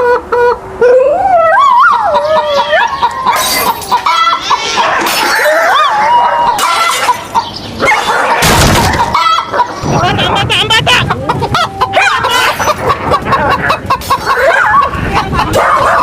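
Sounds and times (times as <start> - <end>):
crashing noises: 8.4 - 9.2.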